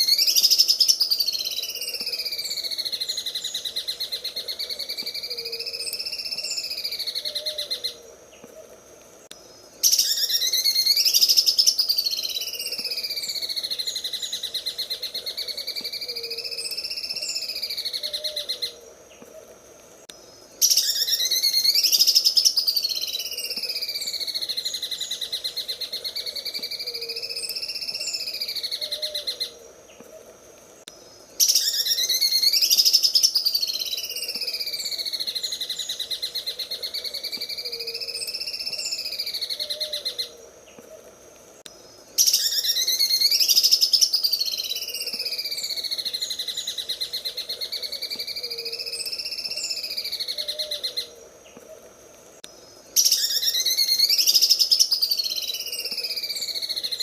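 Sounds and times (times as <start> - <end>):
bird singing rapid rattling trill: 31.4 - 40.0.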